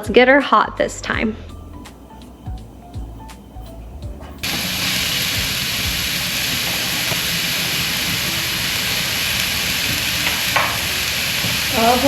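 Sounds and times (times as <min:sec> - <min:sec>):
mushrooms sizzling in oil: 0:04.4 - 0:12.0.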